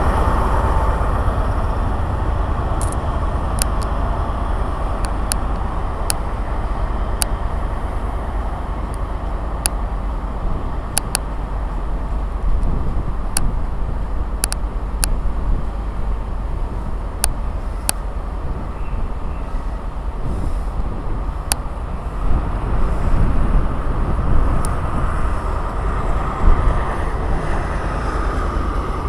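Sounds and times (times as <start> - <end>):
train running low noise: 0.0 - 29.0
sharp clicks: 11.0 - 11.3, 14.4 - 15.2.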